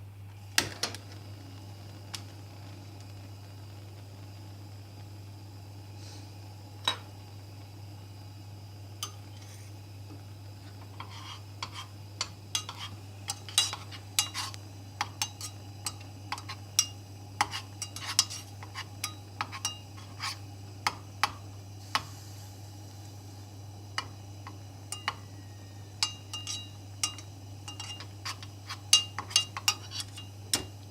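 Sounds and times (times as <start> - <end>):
spoon clinking against pot: 11.6 - 20.0, 24.9 - 25.3, 26.0 - 30.7.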